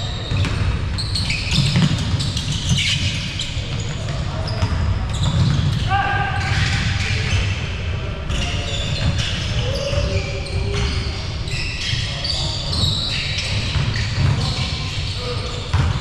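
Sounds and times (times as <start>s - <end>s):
shoe squeaks: 0.0s - 7.6s, 8.3s - 16.0s
basketball bouncing on court: 0.2s - 7.4s, 13.4s - 14.8s, 15.7s - 16.0s.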